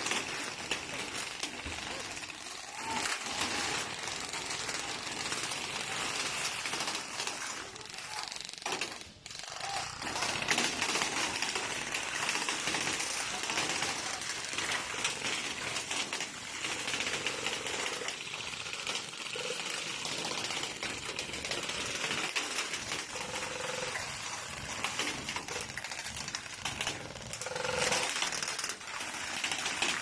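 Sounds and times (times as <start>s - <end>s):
airsoft guns firing: 0.0s - 18.4s.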